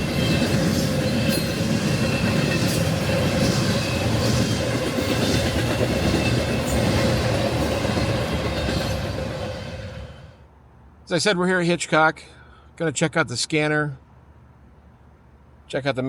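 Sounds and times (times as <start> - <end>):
freight train wheels rumbling: 0.0 - 10.5.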